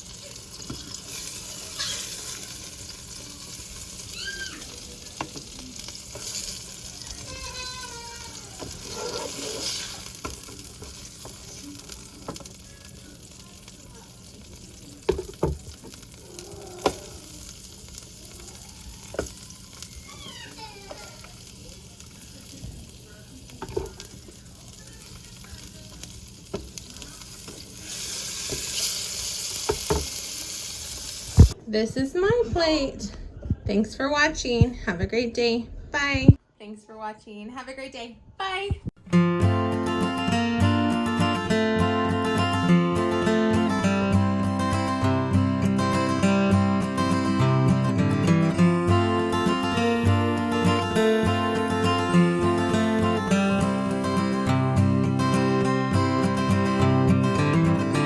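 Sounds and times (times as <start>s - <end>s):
squash sizzling in oil: 0.0s - 31.6s.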